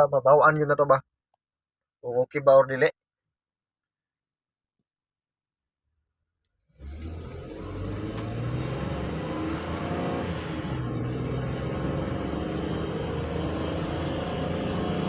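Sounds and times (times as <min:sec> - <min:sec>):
van engine accelerating: 0:06.7 - 0:15.0
road noise: 0:06.8 - 0:15.0.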